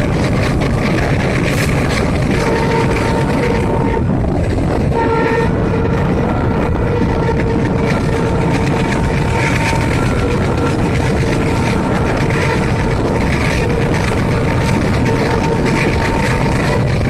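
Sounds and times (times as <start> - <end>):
diesel train engine rumble: 0.0 - 17.0.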